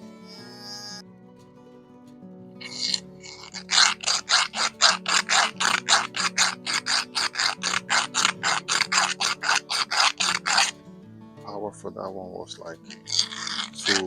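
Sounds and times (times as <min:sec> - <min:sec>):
hand file rasping: 0:02.6 - 0:10.8, 0:12.8 - 0:14.0.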